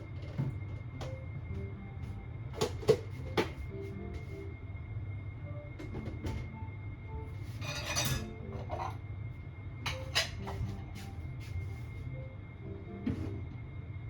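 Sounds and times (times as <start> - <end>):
soft background music: 0.0 - 14.0
dishes and utensils clinking: 7.5 - 9.0, 9.9 - 11.1.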